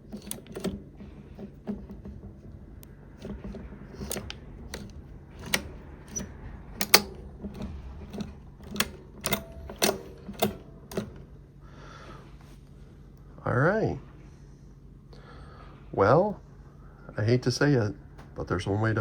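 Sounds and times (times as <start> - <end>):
teleprinter mechanism clacking: 0.0 - 11.4.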